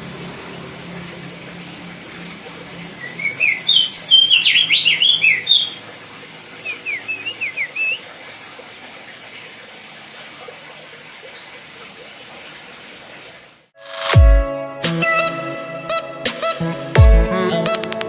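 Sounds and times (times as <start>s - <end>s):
bird singing: 3.0s - 5.8s, 6.6s - 8.1s.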